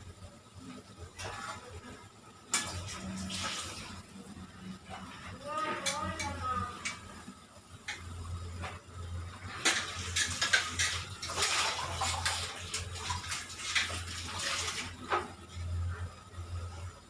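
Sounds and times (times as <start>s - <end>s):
steady low hum: 0.0s - 17.0s
water splashing and running: 2.6s - 4.1s, 9.5s - 15.3s
kitchen vessels clinking: 9.5s - 14.7s.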